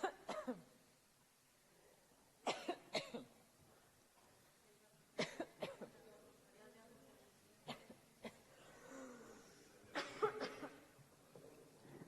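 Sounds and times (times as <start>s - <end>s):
woman coughing: 0.0s - 0.7s, 2.4s - 3.4s, 5.2s - 6.0s, 7.6s - 8.5s, 9.9s - 10.9s.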